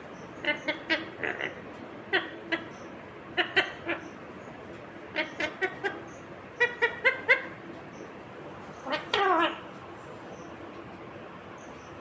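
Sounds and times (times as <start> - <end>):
parakeet chirping: 0.1 - 9.7.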